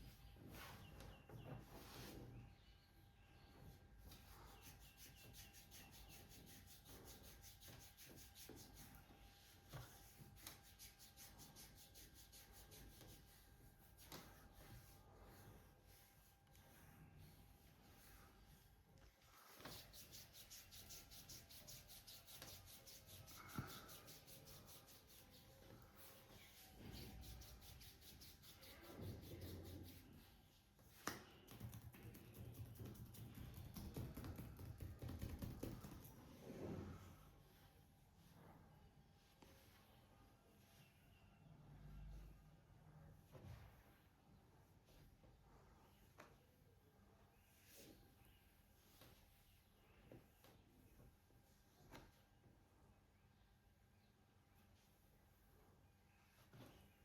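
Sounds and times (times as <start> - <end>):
rhythmic rubbing on skin: 4.2 - 18.6, 19.2 - 30.3, 31.6 - 36.2.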